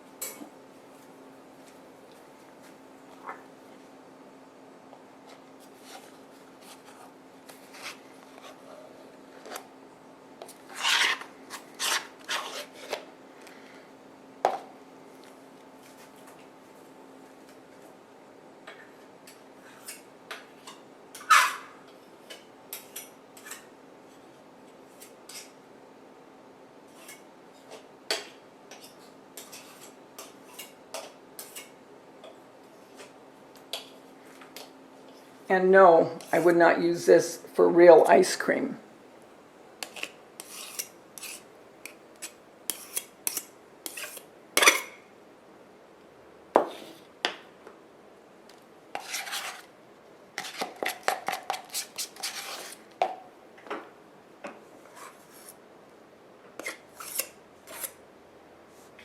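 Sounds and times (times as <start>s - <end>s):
faint steady hum: 0.0s - 59.0s
knife scraping and clinking spackle: 39.8s - 44.9s, 49.0s - 49.7s, 56.6s - 58.0s.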